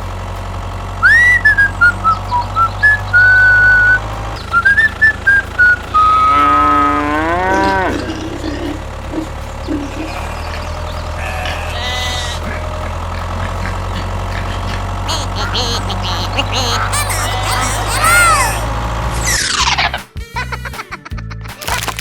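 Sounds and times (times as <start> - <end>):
steady low hum: 0.0 - 19.3
short whistled notes: 1.0 - 7.0
animal bleating: 6.3 - 19.5.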